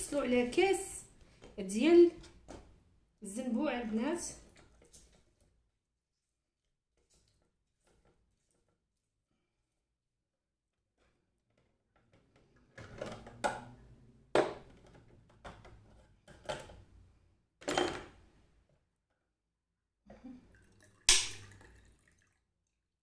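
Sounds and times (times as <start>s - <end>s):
kitchenware knocks and clinks: 17.6s - 18.2s.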